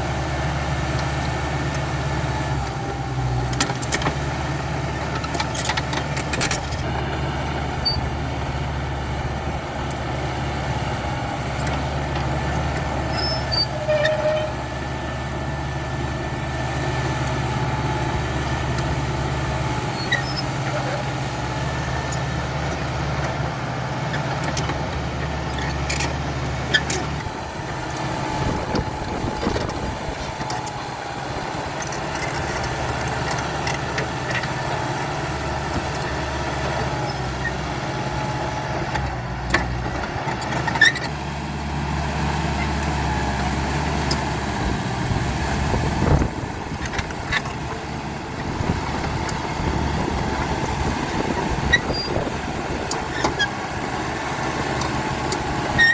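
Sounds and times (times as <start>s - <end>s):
bulldozer diesel engine running: 0.0s - 55.9s.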